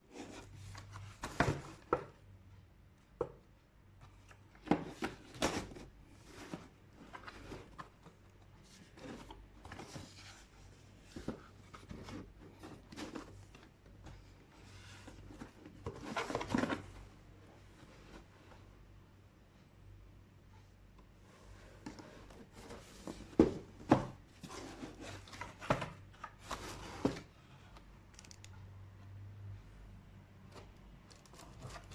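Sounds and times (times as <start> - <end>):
cardboard box handled and opened: 0.1 - 2.1, 4.1 - 17.0, 21.7 - 27.4, 31.3 - 31.9.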